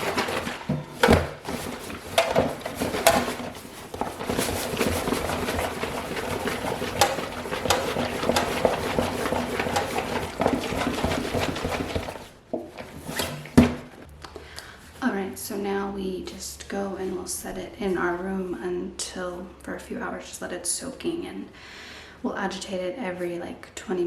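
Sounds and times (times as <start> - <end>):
water sloshing in a shaken bag: 0.0 - 13.7.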